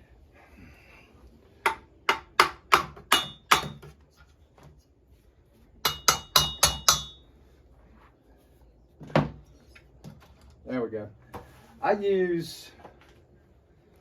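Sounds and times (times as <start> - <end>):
hammer tapping on metal: 1.6 - 3.8, 5.8 - 7.2.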